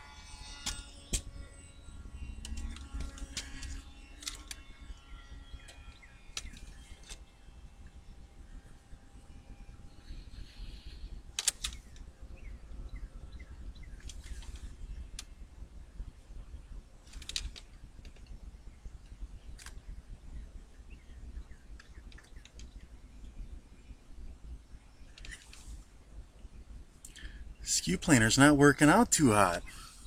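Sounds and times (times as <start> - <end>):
wind rumble on microphone: 2.0 - 27.6
faint bird chirps: 9.3 - 15.2.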